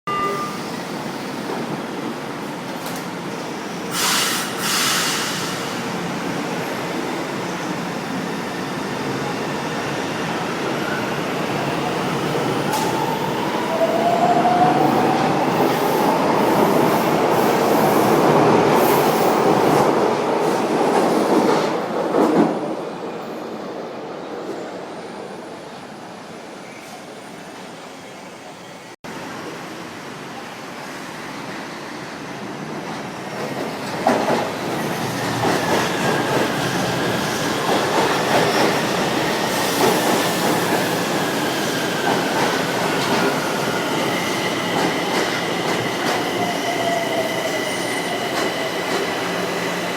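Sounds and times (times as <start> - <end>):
short hisses: 3.9 - 5.8.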